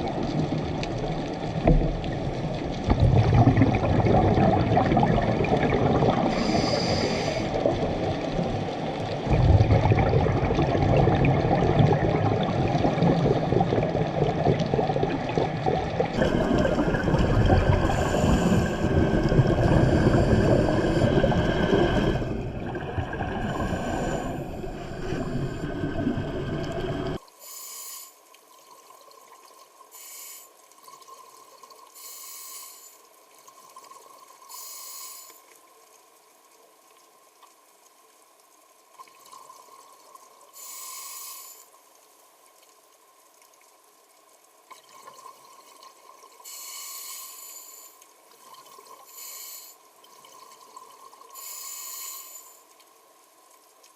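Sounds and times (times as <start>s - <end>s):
faint steady tone: 23.5s - 53.9s
short hissing bursts: 27.4s - 28.2s, 29.9s - 30.5s, 32.0s - 33.0s, 34.5s - 35.4s, 40.6s - 41.7s, 46.4s - 48.0s, 49.1s - 49.8s, 51.4s - 52.6s.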